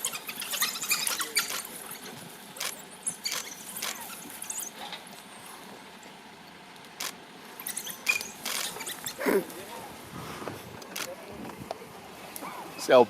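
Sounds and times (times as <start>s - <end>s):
wild dogs squeaky twittering: 0.0s - 6.1s, 7.6s - 9.8s.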